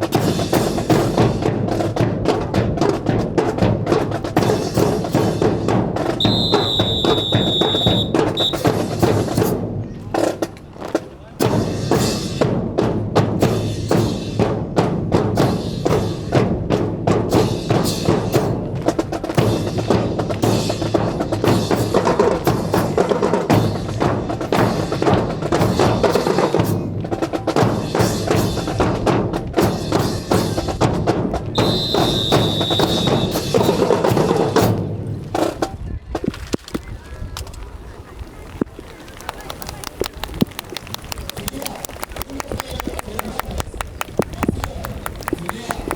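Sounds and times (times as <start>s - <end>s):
marching snare and bass drums: 0.0s - 36.4s, 39.9s - 45.9s
short steady high tone: 6.2s - 8.6s.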